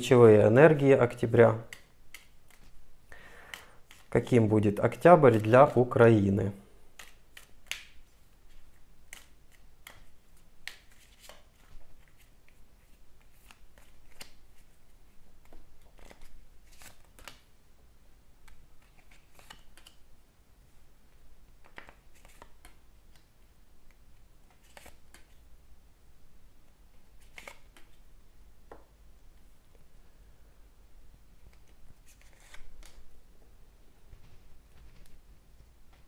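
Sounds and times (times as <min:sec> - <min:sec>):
playing cards being shuffled: 0:03.5 - 0:05.8, 0:07.0 - 0:17.5, 0:18.4 - 0:20.0, 0:21.6 - 0:23.3, 0:24.4 - 0:25.4, 0:27.1 - 0:28.0, 0:31.4 - 0:33.1.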